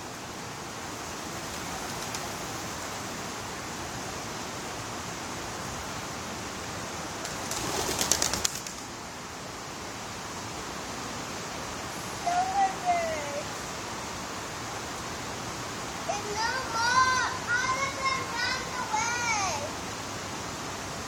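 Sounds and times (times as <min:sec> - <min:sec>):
creek water rushing: 0:00.0 - 0:21.0
pigeon wingbeats clattering: 0:01.6 - 0:02.4, 0:07.2 - 0:08.9.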